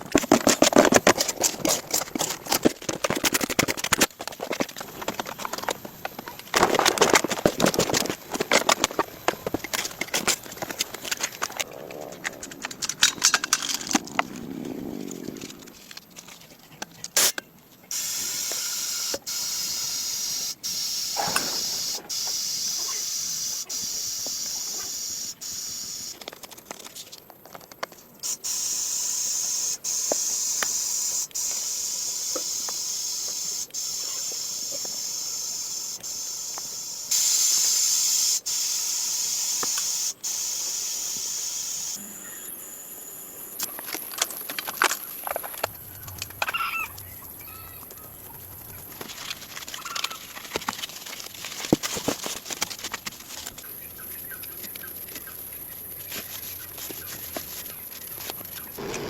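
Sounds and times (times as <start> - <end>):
high-pressure spray hissing: 17.9 - 26.2, 28.2 - 43.7, 58.8 - 59.0.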